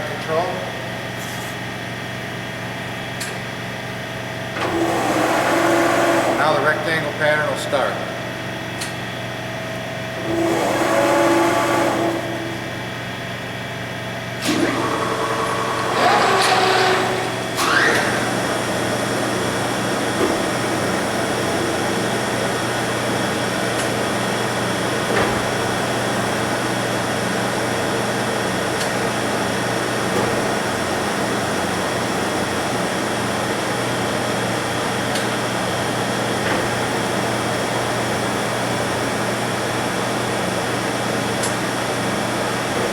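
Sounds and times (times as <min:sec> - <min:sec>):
steady running hum and hiss: 0:00.0 - 0:42.9
machine tool motor running: 0:04.5 - 0:06.6, 0:10.2 - 0:12.8, 0:14.4 - 0:27.8.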